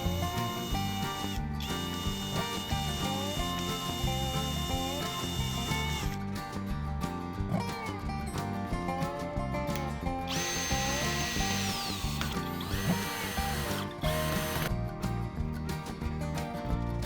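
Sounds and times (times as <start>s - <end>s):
electric drill whining: 0.0s - 6.2s, 10.3s - 14.7s
background music: 0.0s - 17.0s.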